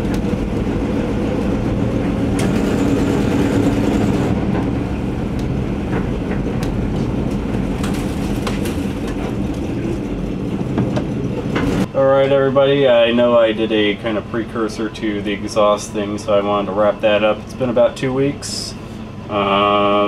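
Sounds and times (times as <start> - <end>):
van engine running: 0.0 - 20.0
rattles and clicks: 1.6 - 11.9.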